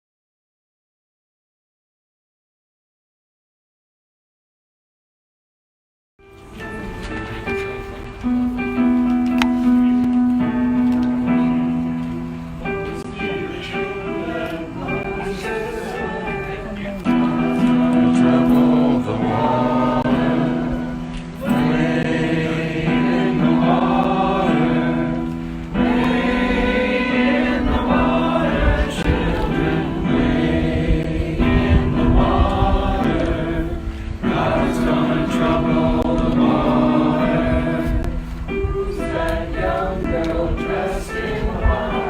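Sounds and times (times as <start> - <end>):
group of people singing: 11.2 - 42.0.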